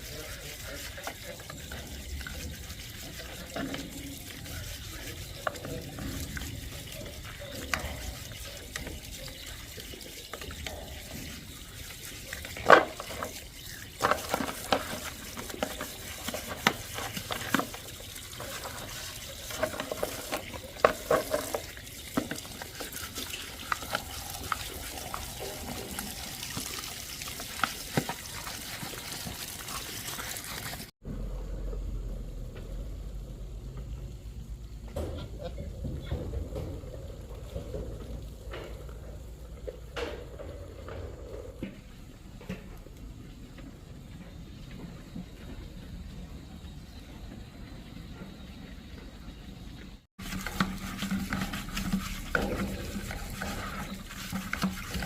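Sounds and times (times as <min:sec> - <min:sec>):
water sloshing and trickling: 0:00.0 - 0:31.0, 0:33.6 - 0:55.0
steady low rumble: 0:31.0 - 0:39.4.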